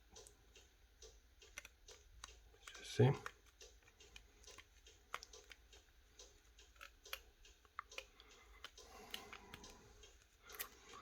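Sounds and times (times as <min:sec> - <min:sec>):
small clicks and taps: 0:00.0 - 0:11.0.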